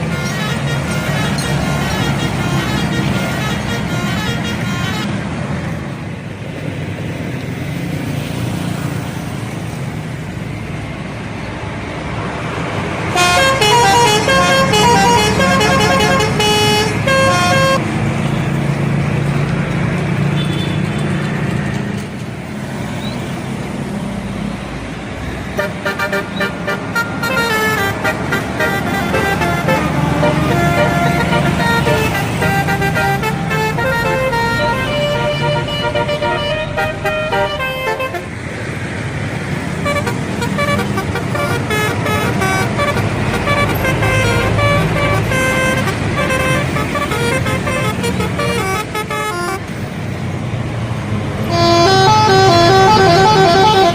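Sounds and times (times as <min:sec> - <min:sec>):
bus air horn tooting melody: 0:00.0 - 0:05.2, 0:13.1 - 0:17.9, 0:20.4 - 0:21.0, 0:25.6 - 0:38.4, 0:39.8 - 0:49.8, 0:51.4 - 0:53.9
bus engine running: 0:00.0 - 0:53.9.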